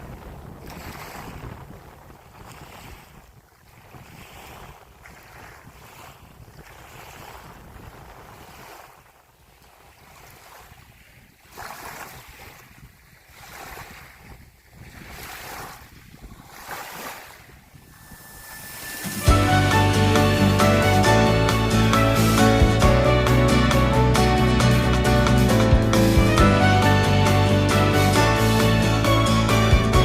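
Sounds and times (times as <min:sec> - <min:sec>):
wind rumbling on microphone: 0:00.0 - 0:19.3
small waves lapping: 0:00.0 - 0:20.5.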